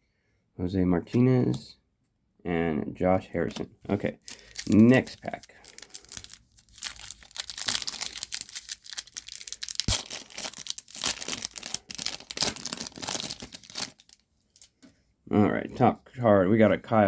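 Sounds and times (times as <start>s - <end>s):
foil pack tearing and crinkling: 4.2s - 14.7s.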